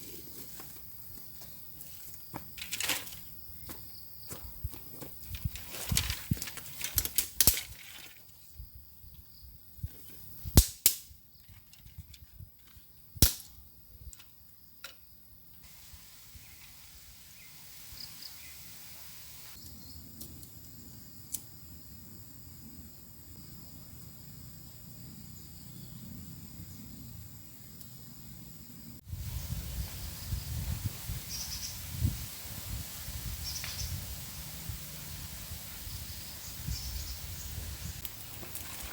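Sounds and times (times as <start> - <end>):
sharp cracks: 10.6 - 11.2, 13.2 - 13.6.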